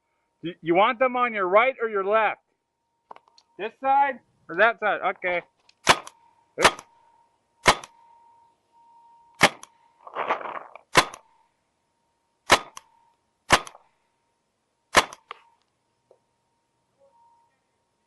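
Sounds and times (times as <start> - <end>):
paintball marker shots: 5.8 - 6.9, 7.6 - 8.0, 9.4 - 9.7, 10.8 - 11.3, 12.5 - 12.9, 13.5 - 13.8, 14.9 - 15.4.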